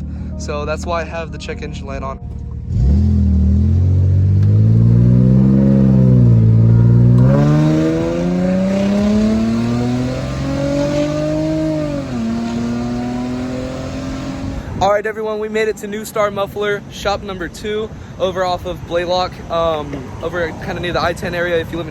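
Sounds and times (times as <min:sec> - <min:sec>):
car engine accelerating: 0:00.0 - 0:14.8
leaking exhaust: 0:00.0 - 0:14.8.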